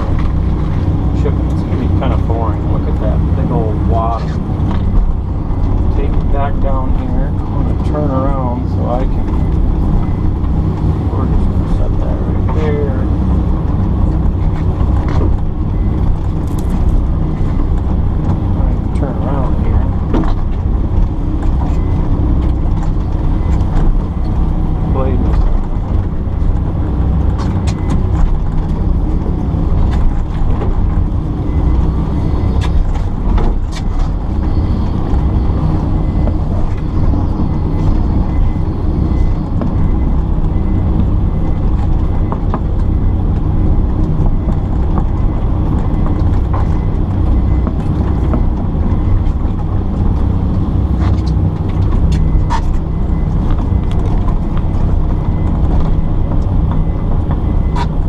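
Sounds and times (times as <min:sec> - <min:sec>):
excavator diesel engine running: 0:00.0 - 0:58.0
knocks and clatters: 0:12.5 - 0:58.0.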